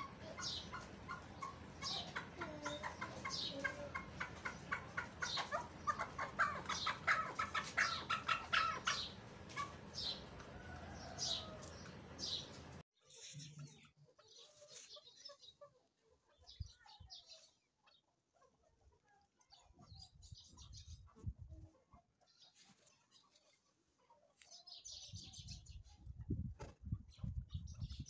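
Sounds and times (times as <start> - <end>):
partridge clucking calls: 0.0 - 17.1.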